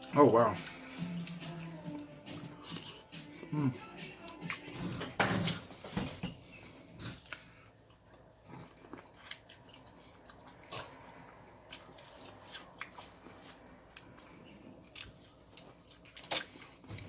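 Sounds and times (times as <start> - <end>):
wet chewing clicks and smacks: 7.1 - 17.0.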